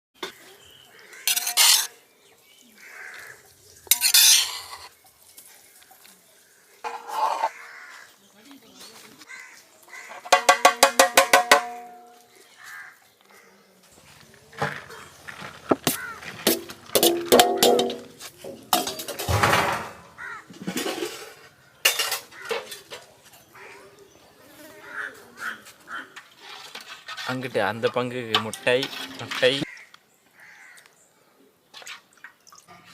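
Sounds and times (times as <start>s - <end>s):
metal utensil scraping a pot: 1.2s - 2.0s, 3.9s - 4.9s, 6.8s - 7.6s, 16.4s - 19.4s, 26.3s - 29.7s.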